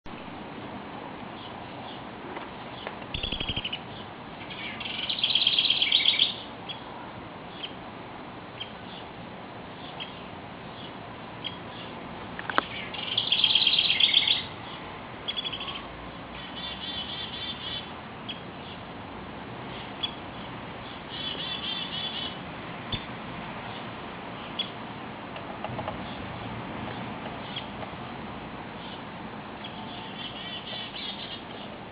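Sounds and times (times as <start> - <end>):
bird chirping: 2.7 - 6.9, 7.5 - 7.8, 9.8 - 18.9, 19.7 - 22.4, 23.7 - 24.8, 27.4 - 27.7, 28.8 - 31.8.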